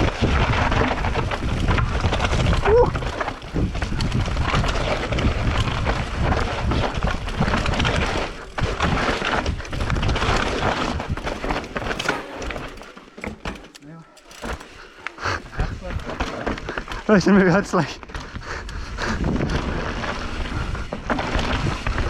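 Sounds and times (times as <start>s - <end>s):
wind rumbling on microphone: 0.0s - 12.0s, 18.0s - 22.0s
bike frame and chain rattling: 0.0s - 17.9s
tyres rolling over dirt and rock: 0.0s - 18.2s.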